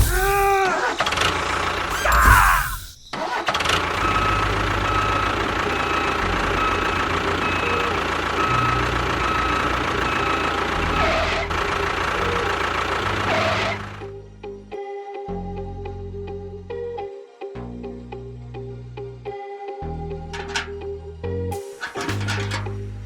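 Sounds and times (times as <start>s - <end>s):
small engine chugging: 2.7s - 14.1s.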